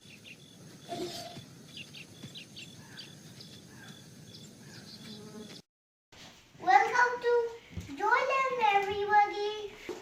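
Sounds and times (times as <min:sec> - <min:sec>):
small birds chirping: 0:00.0 - 0:05.6.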